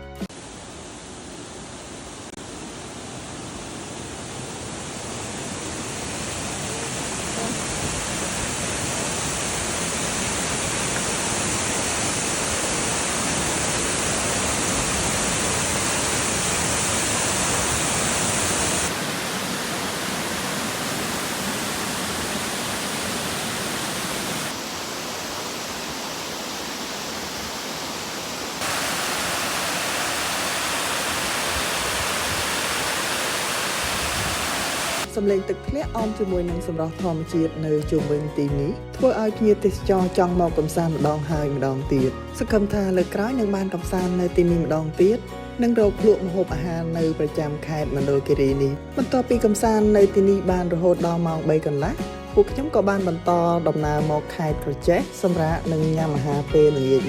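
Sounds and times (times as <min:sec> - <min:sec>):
waterfall rushing: 0:02.4 - 0:35.1.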